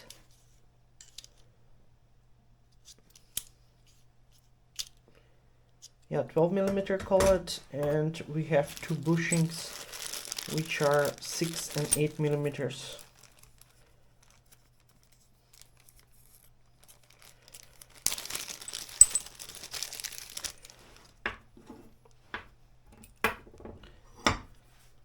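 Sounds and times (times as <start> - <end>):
plastic packaging crinkling: 7.6 - 21.2
small parts clicking: 16.8 - 20.6.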